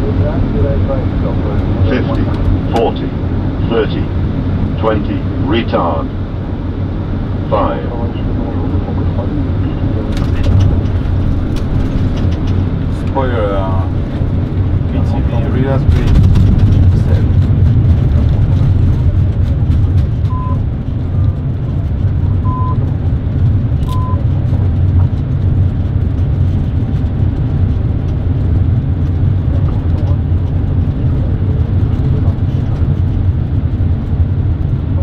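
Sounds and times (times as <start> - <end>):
aircraft low rumble: 0.0 - 35.0
short high beeps: 20.3 - 20.6, 23.8 - 24.2.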